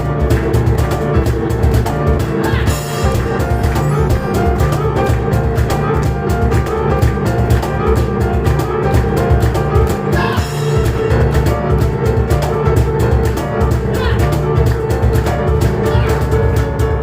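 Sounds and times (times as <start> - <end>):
cajon percussion strikes: 0.0 - 17.0
piano playing: 0.0 - 17.0.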